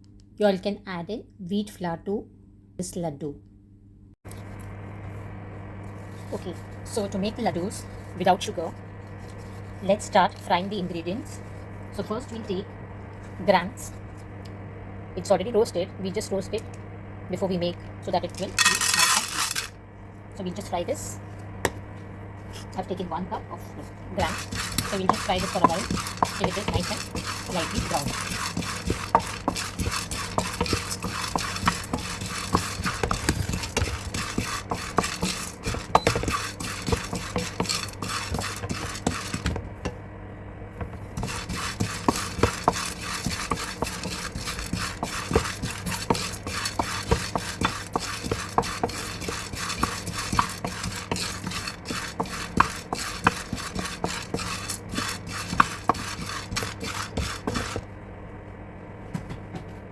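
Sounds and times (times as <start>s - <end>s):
spatula scraping chickpeas in pan: 18.3s - 19.7s, 23.8s - 39.6s, 41.2s - 57.8s.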